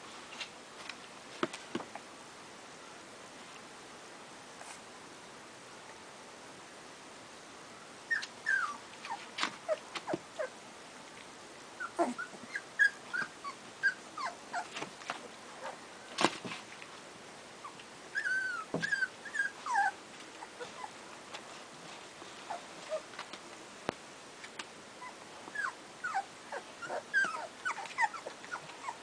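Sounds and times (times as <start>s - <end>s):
puppies whimpering and squeaking: 8.1s - 9.8s, 11.8s - 14.8s, 18.2s - 21.0s, 25.0s - 29.0s.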